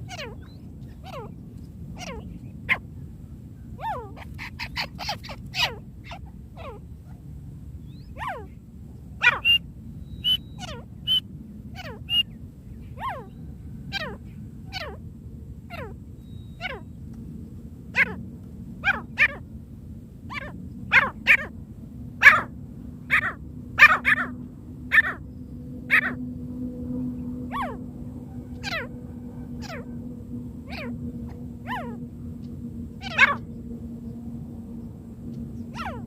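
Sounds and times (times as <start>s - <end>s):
francolin calling: 0.0s - 1.4s, 9.2s - 15.0s, 15.7s - 17.0s, 17.9s - 18.2s, 18.8s - 19.4s, 20.3s - 21.6s, 22.2s - 26.3s, 26.9s - 36.0s
faint steady hum: 0.0s - 36.0s.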